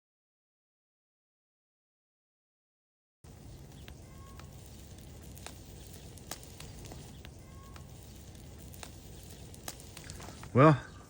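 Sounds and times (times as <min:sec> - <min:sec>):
faint clicks: 0:03.6 - 0:10.6.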